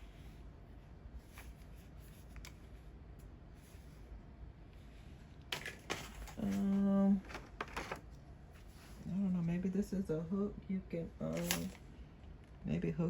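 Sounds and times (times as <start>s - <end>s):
plastic handling noise: 5.5s - 8.7s.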